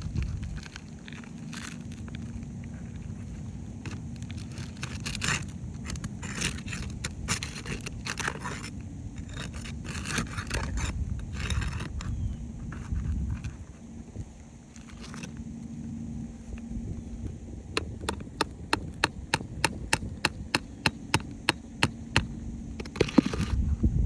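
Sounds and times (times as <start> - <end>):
roof shingles scraping: 0.2 - 12.0.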